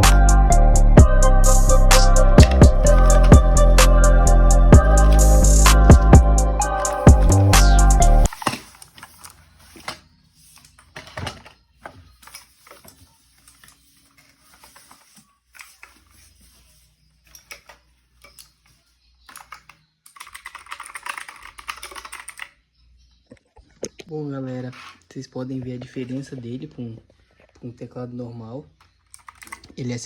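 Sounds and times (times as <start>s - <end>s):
mechanical keyboard typing: 1.9s - 8.5s, 19.3s - 22.5s, 29.2s - 29.8s.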